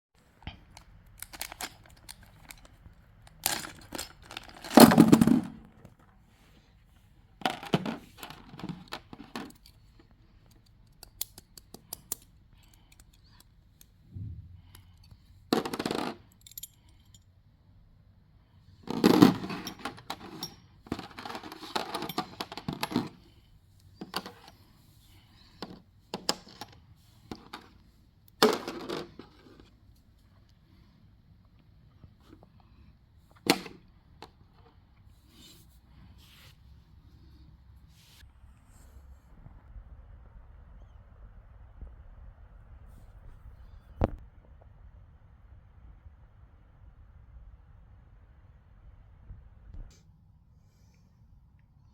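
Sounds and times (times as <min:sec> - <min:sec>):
packaging and plastic parts handled: 0:00.4 - 0:06.0, 0:18.9 - 0:23.2.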